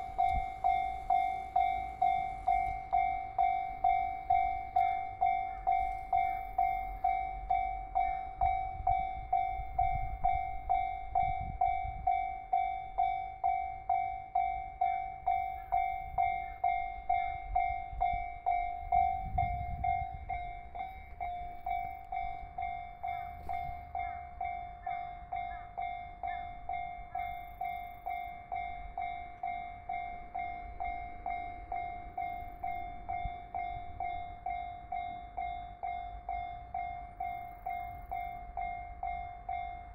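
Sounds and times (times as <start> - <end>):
level-crossing warning bell ringing: 0.0 - 39.9
low train rumble: 0.0 - 39.9.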